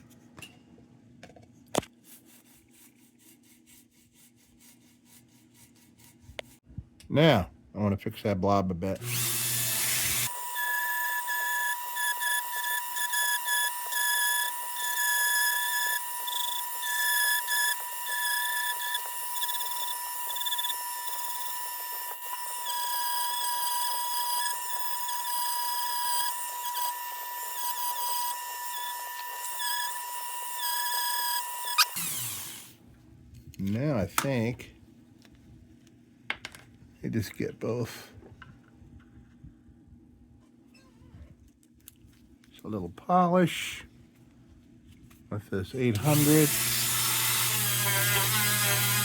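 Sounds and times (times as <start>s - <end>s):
rotary tool grinding: 9.0s - 32.7s, 46.0s - 49.0s.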